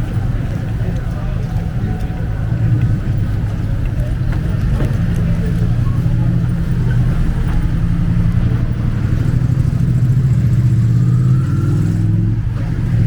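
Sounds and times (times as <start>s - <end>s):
vehicle engine running: 0.0s - 13.0s.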